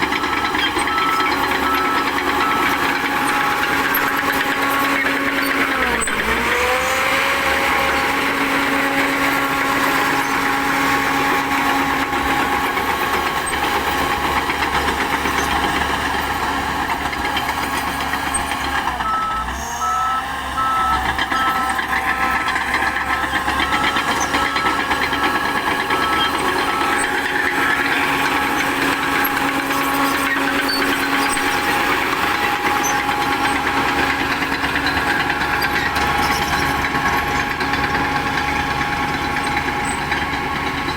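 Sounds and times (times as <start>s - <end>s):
reversing beeper: 0.0s - 8.0s, 18.3s - 28.6s
bulldozer diesel engine running: 0.0s - 40.9s.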